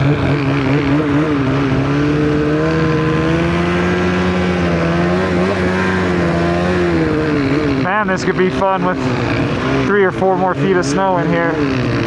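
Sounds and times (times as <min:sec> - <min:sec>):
snowmobile engine running: 0:00.0 - 0:12.0.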